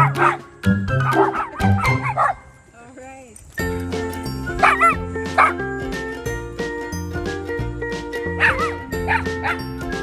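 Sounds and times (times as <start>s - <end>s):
stepping bass line: 3.6s - 10.0s.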